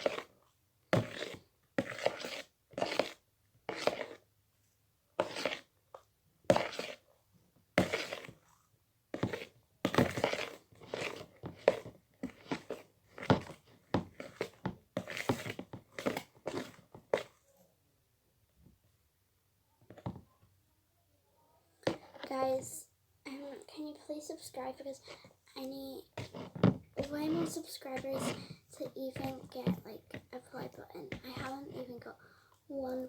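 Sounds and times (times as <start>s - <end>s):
slime squishing: 7.8s - 8.4s.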